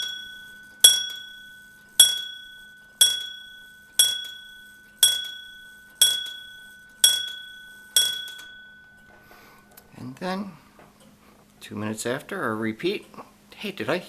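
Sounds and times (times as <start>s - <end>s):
clock bell strikes: 0.0s - 9.4s.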